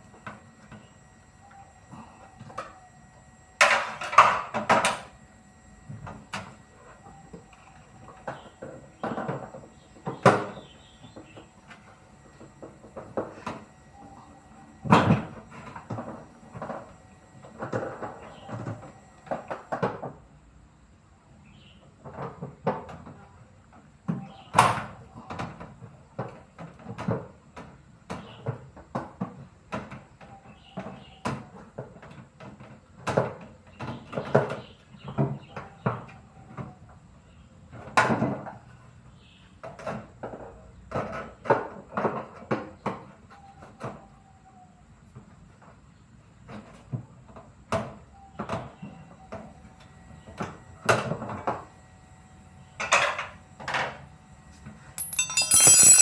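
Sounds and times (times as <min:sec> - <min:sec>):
metal and plastic parts clattering: 0:55.0 - 0:56.0.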